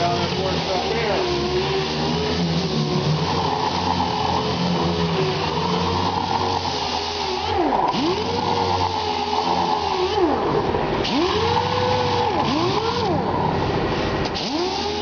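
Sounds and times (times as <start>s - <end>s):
air sander whine: 0.0s - 15.0s.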